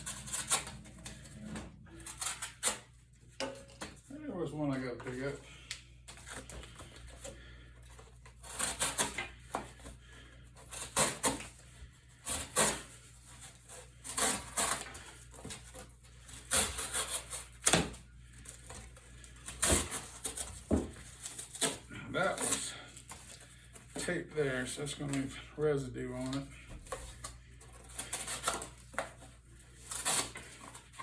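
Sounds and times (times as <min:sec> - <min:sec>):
knife slicing cardboard: 0:08.4 - 0:09.6, 0:10.6 - 0:11.5, 0:12.2 - 0:12.9, 0:13.8 - 0:18.0, 0:19.4 - 0:22.6, 0:29.8 - 0:30.8.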